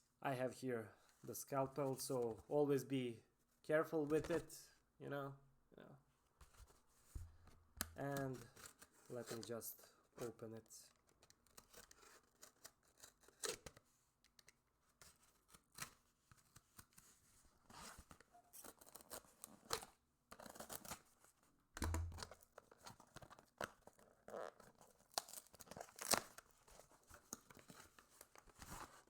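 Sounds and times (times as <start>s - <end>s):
paper tearing and crinkling: 23.2s - 26.5s.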